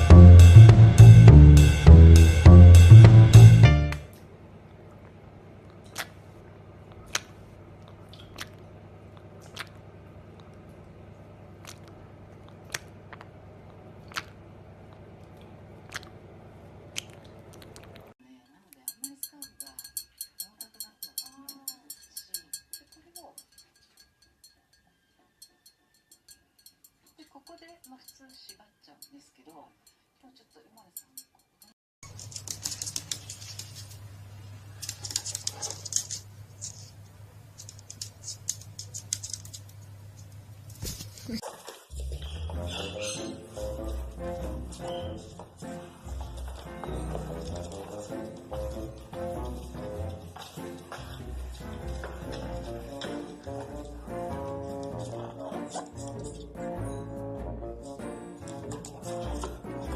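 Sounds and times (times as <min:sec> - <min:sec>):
parrot beak crunching: 0:05.6 - 0:06.3, 0:06.9 - 0:10.9, 0:11.5 - 0:18.1, 0:32.0 - 0:34.0, 0:34.7 - 0:42.0
rapid high-pitched clicking and scratching: 0:32.0 - 0:34.0.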